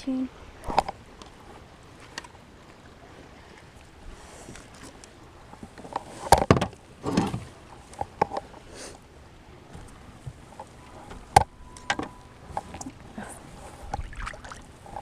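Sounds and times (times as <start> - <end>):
rustle: 0.0 - 15.0
knocks and clunks on kayak: 0.6 - 1.4, 4.4 - 8.7, 9.5 - 13.0, 13.8 - 15.0.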